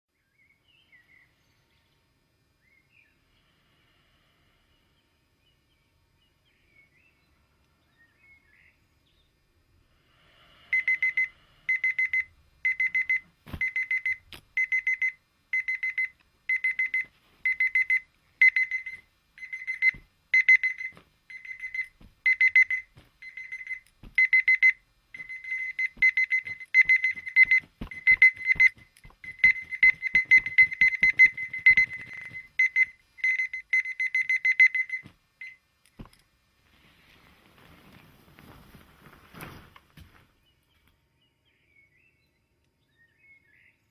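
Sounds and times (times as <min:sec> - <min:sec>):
alarm clock beeping: 0:10.7 - 0:35.6
knocks and clicks: 0:25.2 - 0:32.6.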